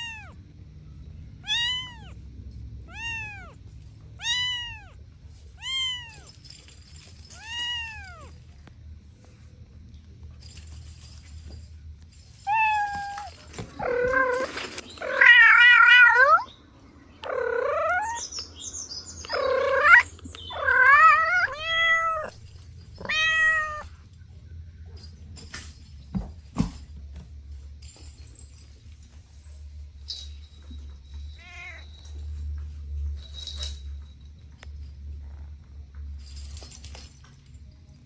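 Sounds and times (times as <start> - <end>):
cats meowing: 0.0 - 0.4, 1.4 - 2.2, 2.8 - 6.4, 7.3 - 8.4, 12.4 - 16.5, 17.2 - 18.5, 19.2 - 24.1, 31.4 - 32.0.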